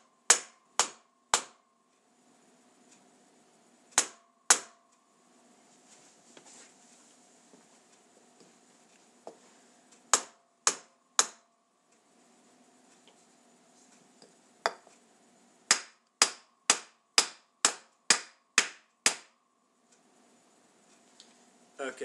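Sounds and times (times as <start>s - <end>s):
hammer striking wooden block: 0.3s - 1.6s, 4.0s - 4.8s, 10.1s - 11.5s, 15.7s - 19.4s.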